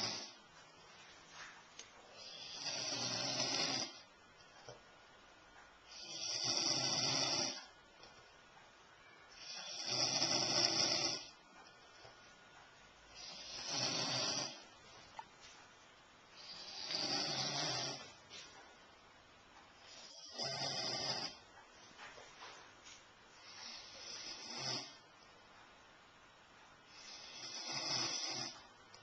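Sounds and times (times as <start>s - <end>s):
person snoring: 0.0s - 0.4s, 2.1s - 4.1s, 5.9s - 7.7s, 9.3s - 11.4s, 13.1s - 14.7s, 16.4s - 18.2s, 19.9s - 21.4s, 23.4s - 25.0s, 26.9s - 28.6s
quiet breaths: 0.0s - 29.0s.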